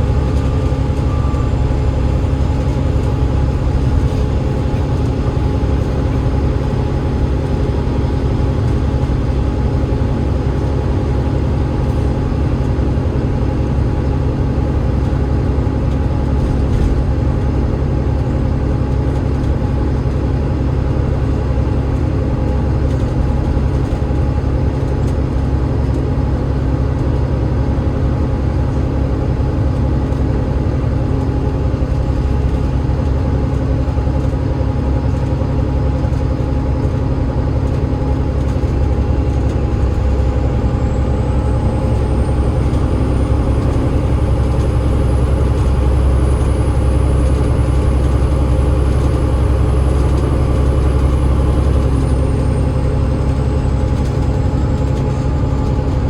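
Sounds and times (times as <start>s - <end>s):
driveline whine: 0.0s - 12.7s, 38.4s - 56.0s
bus diesel engine drone: 0.0s - 56.0s.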